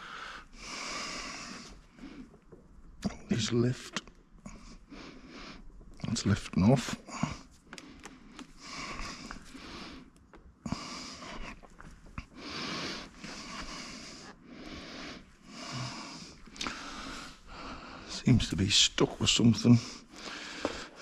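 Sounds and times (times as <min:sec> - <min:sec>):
person breathing hard through nose: 0:00.0 - 0:02.3, 0:07.1 - 0:18.1, 0:19.8 - 0:21.0.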